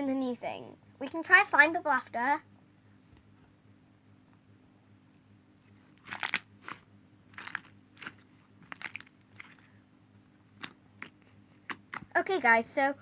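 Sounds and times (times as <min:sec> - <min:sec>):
slime squeezed by hand crackling: 0:05.8 - 0:09.7, 0:10.5 - 0:12.2.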